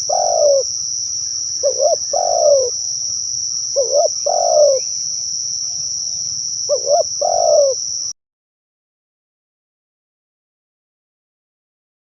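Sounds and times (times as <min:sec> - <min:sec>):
dove cooing: 0:00.0 - 0:00.7, 0:01.6 - 0:02.8, 0:03.7 - 0:04.9, 0:05.6 - 0:07.9
high-pitched insect drone: 0:00.0 - 0:08.2.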